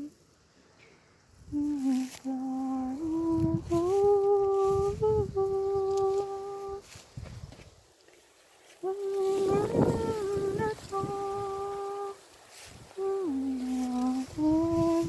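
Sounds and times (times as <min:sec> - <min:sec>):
wind rumbling on microphone: 0:01.2 - 0:07.9, 0:08.8 - 0:15.0
woman humming a slow melody: 0:01.4 - 0:07.0, 0:08.8 - 0:15.0.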